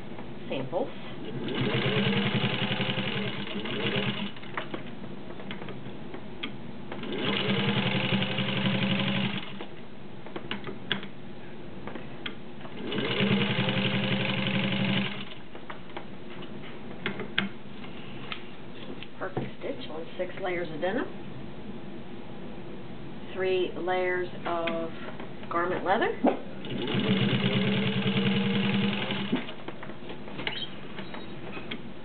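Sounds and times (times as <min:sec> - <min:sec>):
sewing machine stitching: 0:01.3 - 0:04.6, 0:07.0 - 0:09.6, 0:12.8 - 0:15.4, 0:26.6 - 0:29.6.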